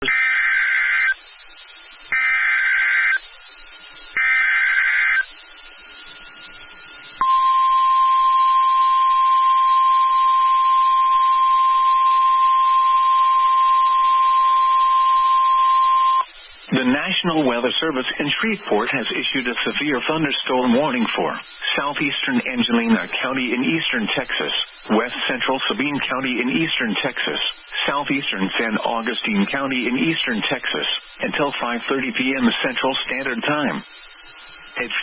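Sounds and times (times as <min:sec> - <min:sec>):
digital data screech bursts: 0:00.0 - 0:20.6
steady warning alarm tone: 0:00.0 - 0:21.8.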